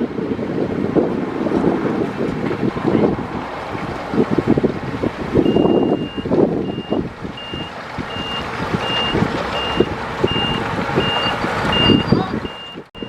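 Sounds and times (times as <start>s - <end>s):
engine rumble with knocks: 0.0s - 13.0s
reversing alarm beeping: 5.4s - 13.0s.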